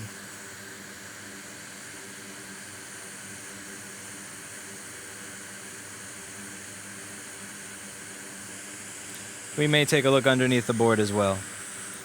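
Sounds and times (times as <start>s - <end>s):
fan airflow hiss: 6.3s - 12.0s.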